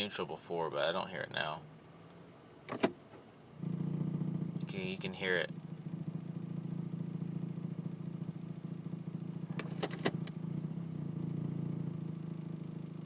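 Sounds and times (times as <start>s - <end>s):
truck engine idling drone: 3.2s - 13.0s.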